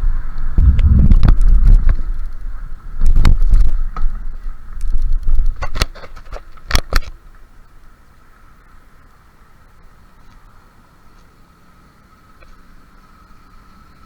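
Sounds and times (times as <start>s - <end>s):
bicycle knocking and rattling: 0.0s - 9.4s
wind rumbling on microphone: 0.0s - 10.7s.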